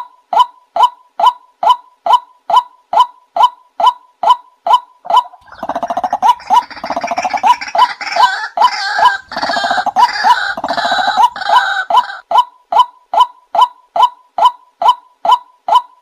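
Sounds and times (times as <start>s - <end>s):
bird kwak calls: 5.3s - 12.2s
buzzy rattling bird croaks: 5.4s - 11.8s.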